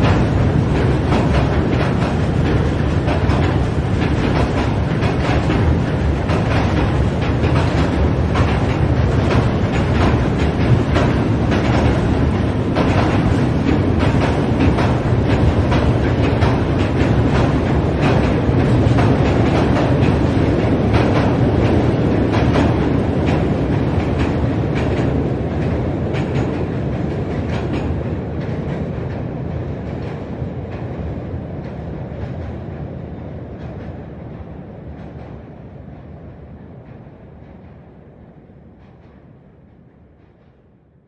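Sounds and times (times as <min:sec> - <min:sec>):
wheels clacking over rail joints: 0:00.0 - 0:32.5
train wagons rumbling on bridge: 0:00.0 - 0:40.8.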